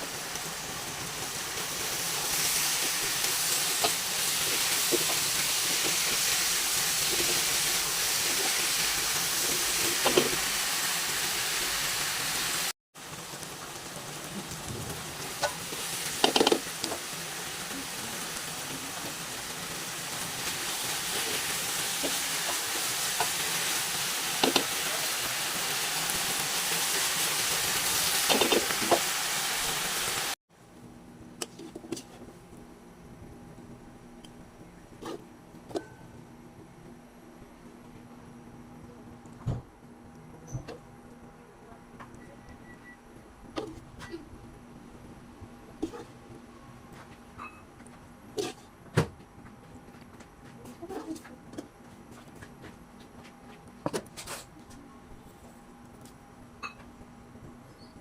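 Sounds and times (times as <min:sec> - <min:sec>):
food sizzling in a pan: 0:00.0 - 0:30.4.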